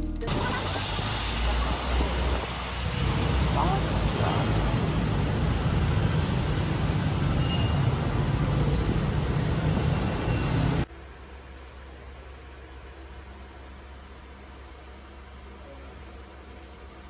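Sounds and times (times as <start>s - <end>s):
car road and engine rumble: 0.0s - 10.9s
faint hiss: 0.3s - 10.8s.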